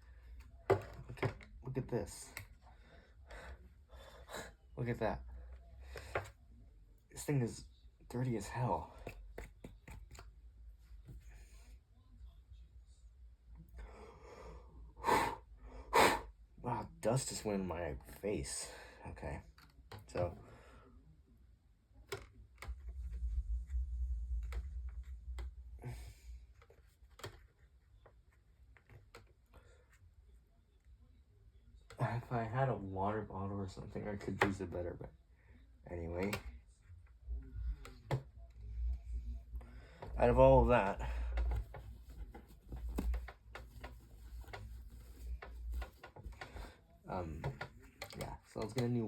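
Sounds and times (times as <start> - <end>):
light clicks and taps on plastic: 8.9 - 11.4, 26.5 - 30.0, 41.2 - 49.0
low handling rumble: 22.8 - 26.4.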